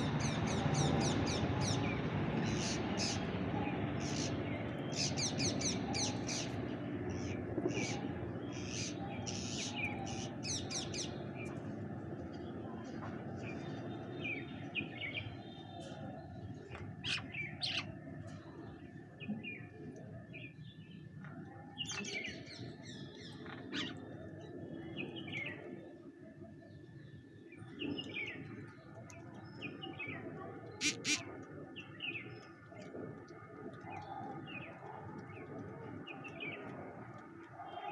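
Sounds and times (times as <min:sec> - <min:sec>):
birds chirping and chattering: 0:00.0 - 0:21.2, 0:21.8 - 0:37.9.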